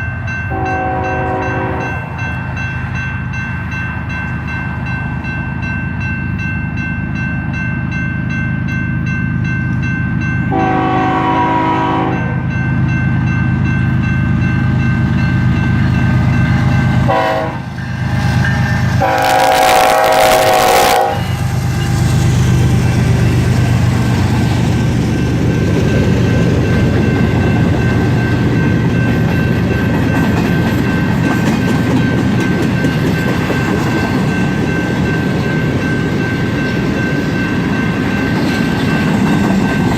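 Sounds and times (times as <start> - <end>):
diesel locomotive engines rumbling: 0.0 - 39.9
wheels on rail: 0.0 - 39.9
locomotive horn chord: 0.5 - 2.0, 10.5 - 12.4, 17.1 - 17.7, 19.0 - 21.4.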